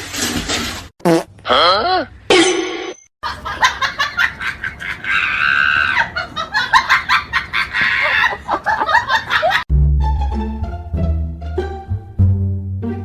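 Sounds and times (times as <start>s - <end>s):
shrieking cries: 5.0s - 6.2s
music with plucked bass and cello: 9.7s - 13.0s.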